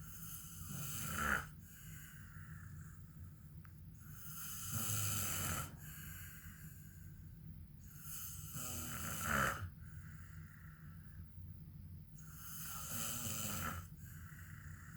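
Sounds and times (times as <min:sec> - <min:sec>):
man snoring: 0:00.2 - 0:01.6, 0:04.1 - 0:05.9, 0:08.0 - 0:09.7, 0:12.3 - 0:14.9.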